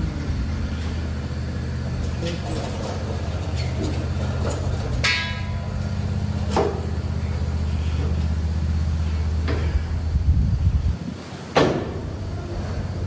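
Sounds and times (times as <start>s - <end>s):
tractor engine running: 0.0s - 13.0s
ringing metallic clang: 5.0s - 5.8s.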